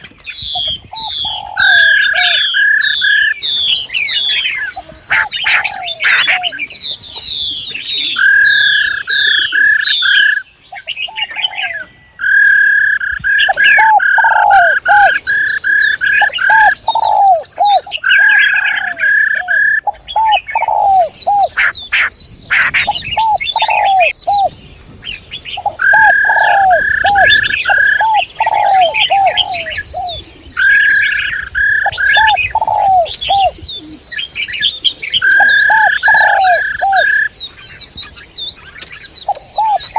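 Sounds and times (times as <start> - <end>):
songbirds chirping and whistling: 0.0 - 39.9
low cooing notes: 13.4 - 21.4, 25.6 - 31.0, 35.2 - 37.2.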